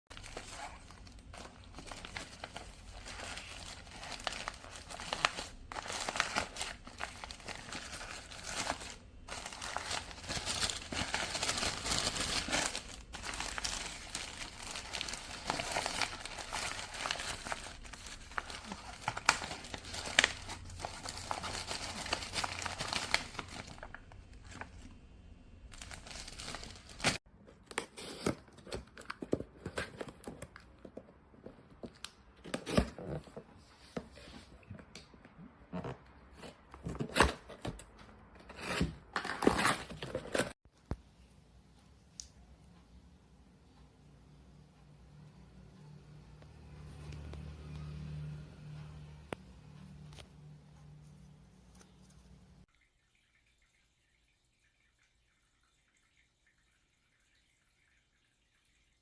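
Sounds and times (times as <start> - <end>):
plastic packaging crinkling: 0.1 - 24.9, 25.7 - 27.2.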